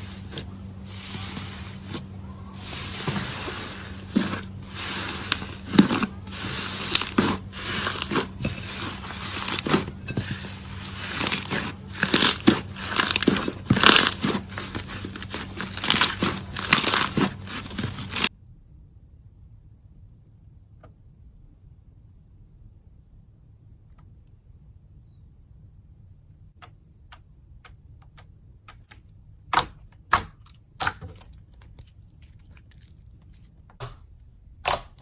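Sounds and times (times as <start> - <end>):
slime crunching and crackling: 0.0 - 18.3, 31.0 - 33.7
steady low hum: 0.0 - 34.6.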